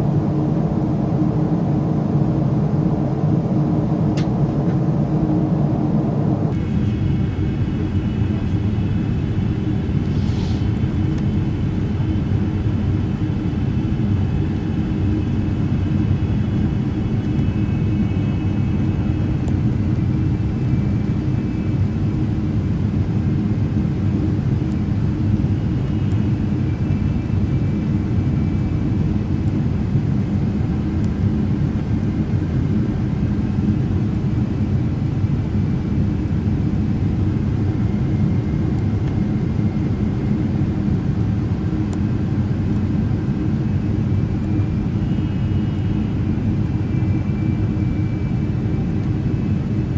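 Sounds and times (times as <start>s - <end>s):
aircraft cabin engine rumble: 0.0s - 49.9s
faint whine tones: 0.0s - 49.9s
brief hiss: 10.0s - 10.8s.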